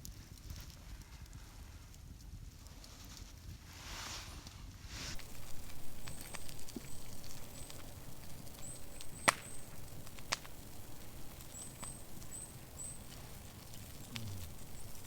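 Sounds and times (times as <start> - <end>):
faint ticks: 5.1 - 15.0
small bird high calls: 5.2 - 15.0.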